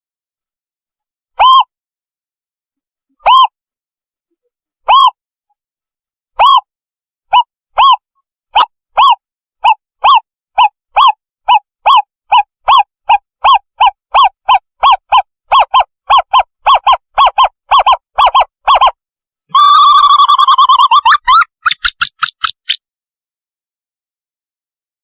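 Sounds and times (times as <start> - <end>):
owl decoy call: 6.4 - 6.7, 8.6 - 22.8.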